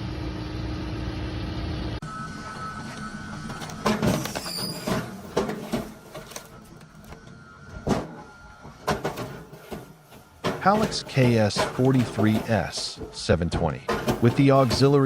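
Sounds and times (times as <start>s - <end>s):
faint machine hum: 0.0s - 15.0s.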